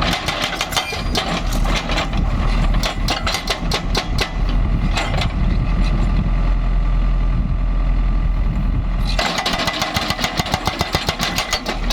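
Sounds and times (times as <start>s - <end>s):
hydraulic breaker hammering concrete: 0.0s - 2.2s, 2.8s - 4.5s, 9.2s - 11.9s
diesel machinery running: 0.0s - 11.9s.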